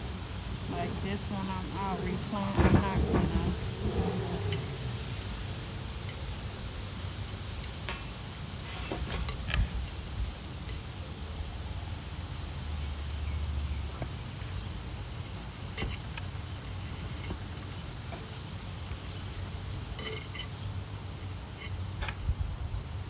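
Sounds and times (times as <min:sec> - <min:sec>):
steady low rumble: 0:00.0 - 0:08.5.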